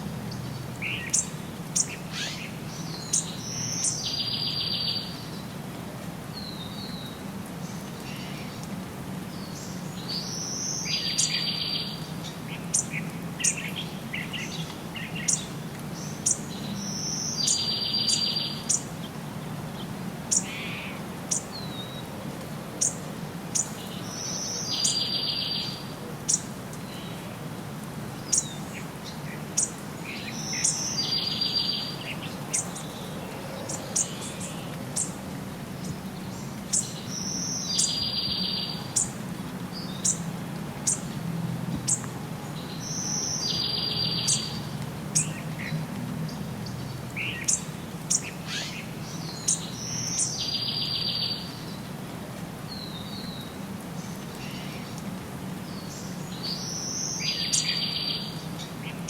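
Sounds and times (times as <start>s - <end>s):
birds chirping: 0.2s - 5.5s, 22.8s - 27.2s, 28.2s - 35.2s, 35.8s - 41.2s, 41.8s - 51.8s, 52.7s - 59.0s.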